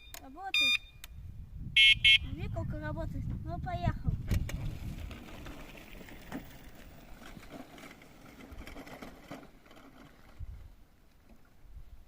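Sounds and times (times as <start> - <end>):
wind buffeting microphone: 1.0 - 8.9, 10.2 - 10.8
electric scooter rattling and clicking: 4.3 - 11.5.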